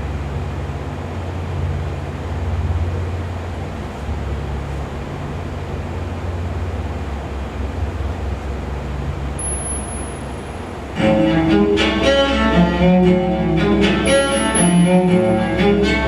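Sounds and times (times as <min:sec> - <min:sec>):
steady low rumbling noise: 0:00.0 - 0:16.0
bowed strings low line: 0:11.0 - 0:16.0.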